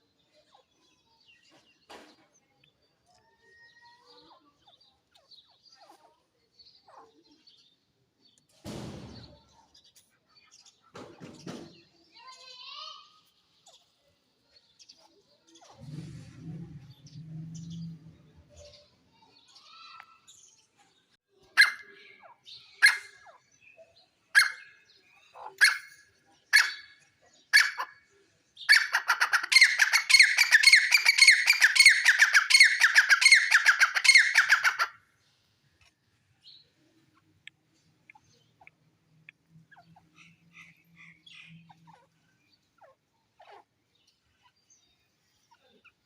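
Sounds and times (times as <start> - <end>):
short low rumble: 15.7 - 18.8.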